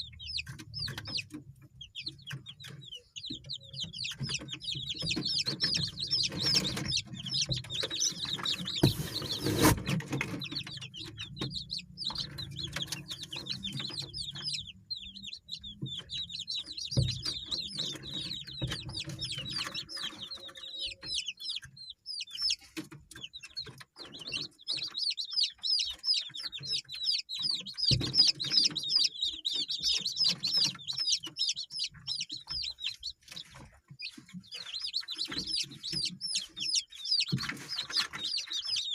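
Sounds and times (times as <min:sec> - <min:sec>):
chickens clucking: 0:00.0 - 0:38.9
chickens peeping: 0:00.0 - 0:38.9.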